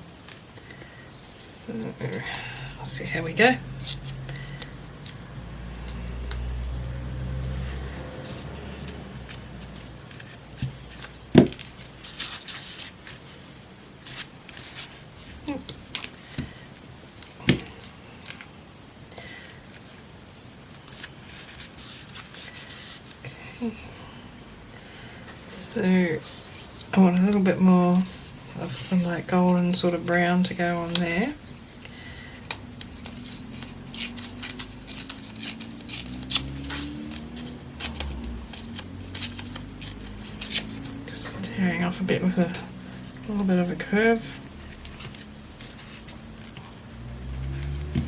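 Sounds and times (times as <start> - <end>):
paper tearing and crackling: 32.5 - 41.2.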